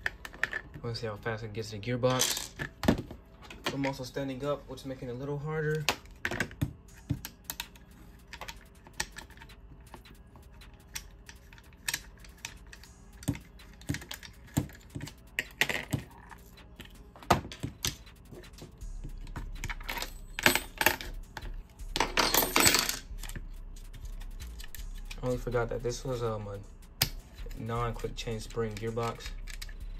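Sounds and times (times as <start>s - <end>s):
gun parts clicking and scraping: 0.0s - 0.9s, 5.6s - 25.7s, 27.0s - 29.9s
metal parts rattling: 19.4s - 23.4s.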